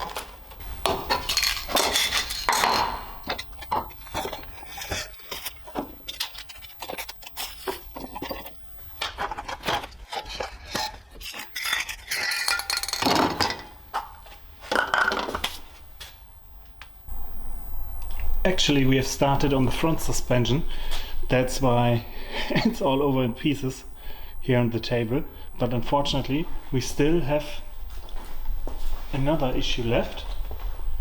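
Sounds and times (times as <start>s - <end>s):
hard objects clinking and clattering: 0.0s - 15.6s.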